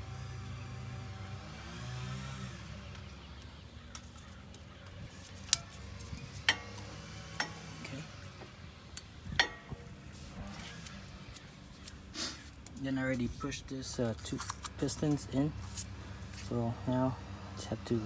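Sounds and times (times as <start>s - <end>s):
steady low hum: 0.0s - 18.0s
sharp metallic clinks: 9.0s - 10.2s.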